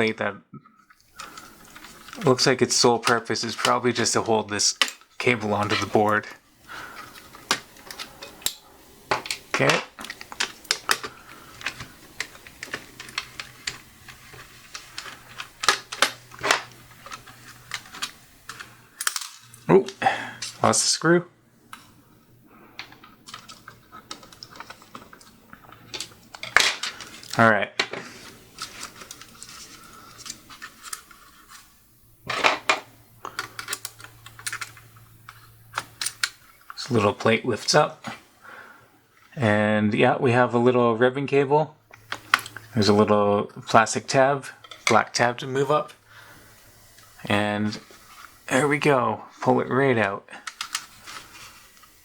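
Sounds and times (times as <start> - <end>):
screwdriver clicking and scraping: 1.1 - 6.2, 6.8 - 20.7, 22.8 - 37.4, 50.4 - 52.0.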